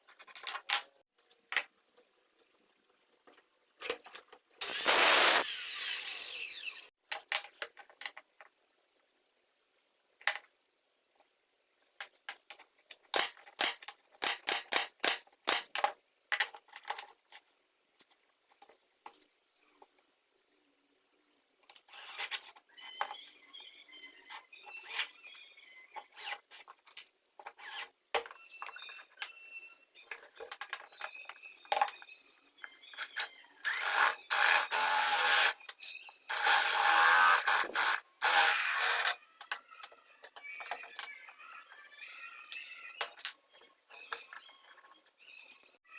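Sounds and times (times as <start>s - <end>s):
power tool starting: 4.6s - 6.9s, 33.6s - 35.6s, 36.3s - 39.2s.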